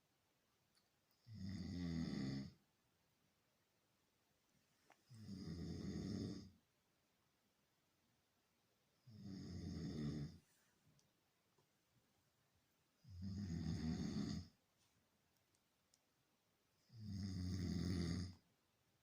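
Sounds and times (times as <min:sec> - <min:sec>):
person snoring: 0:01.2 - 0:02.6, 0:05.1 - 0:06.6, 0:09.1 - 0:10.4, 0:13.0 - 0:14.6, 0:16.8 - 0:18.4.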